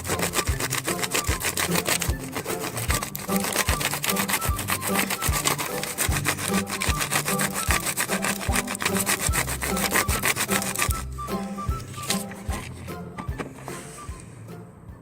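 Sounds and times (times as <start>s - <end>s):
crayon rasping on paper: 0.0s - 12.8s
background music with steady beat: 0.0s - 15.0s.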